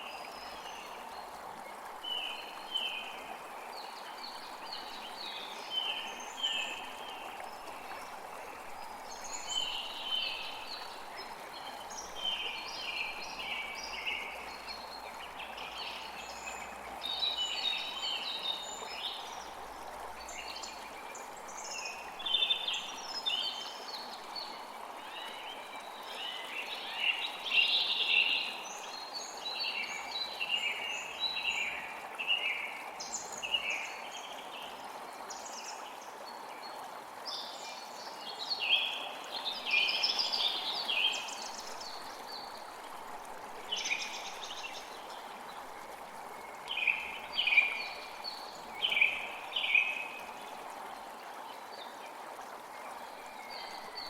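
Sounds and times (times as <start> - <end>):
creek water flowing: 0.0 - 54.0.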